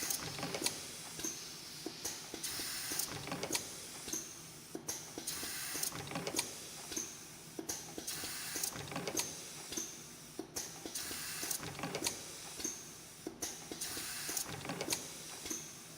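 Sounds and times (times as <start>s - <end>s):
machine hiss: 0.0s - 4.4s, 10.7s - 15.9s.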